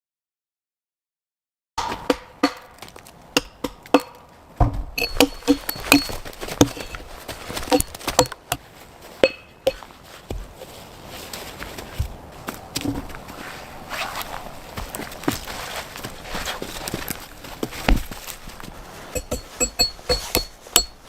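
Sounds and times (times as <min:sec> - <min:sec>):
sharp metallic knocks and clinks: 0:01.8 - 0:04.2, 0:05.0 - 0:08.6, 0:09.2 - 0:09.8, 0:19.2 - 0:21.0.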